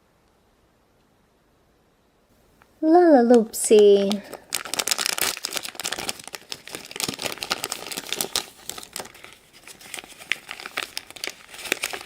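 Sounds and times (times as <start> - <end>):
plastic wrapper crinkling: 3.3 - 12.0.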